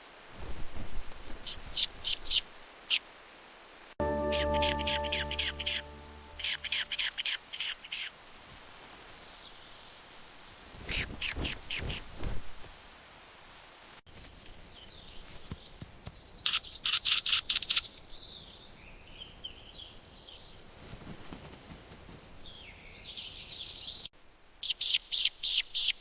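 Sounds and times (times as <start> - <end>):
bird song with sharp high notes: 4.0 - 8.1
bird warbling: 4.3 - 8.1.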